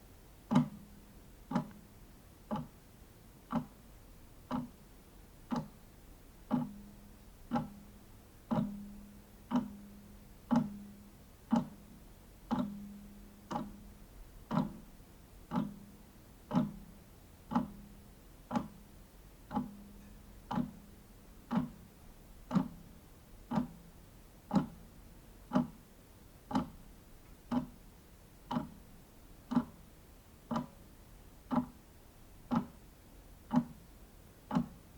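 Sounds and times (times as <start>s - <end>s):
wall clock ticking: 0.5s - 1.9s, 2.5s - 2.8s, 3.4s - 3.8s, 4.4s - 4.8s, 5.4s - 5.8s, 6.4s - 27.8s, 28.4s - 28.8s, 29.4s - 29.9s, 30.5s - 30.8s, 31.5s - 31.9s, 32.5s - 32.8s, 33.4s - 34.9s.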